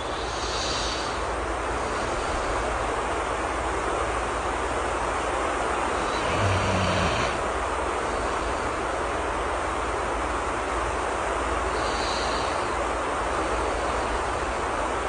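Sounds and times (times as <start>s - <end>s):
steady rain hiss: 0.0s - 15.0s
soft snore: 6.0s - 7.4s.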